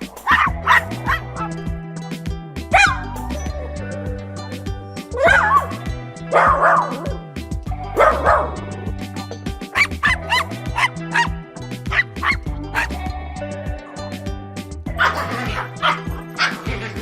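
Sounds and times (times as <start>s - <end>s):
background music with bass line: 0.0s - 17.0s
puppy barking: 0.2s - 1.6s, 2.7s - 3.1s, 5.2s - 7.2s, 8.0s - 8.6s, 9.7s - 13.0s, 14.9s - 17.0s
puppy yipping and whimpering: 5.2s - 5.7s, 9.7s - 11.3s, 11.9s - 12.9s.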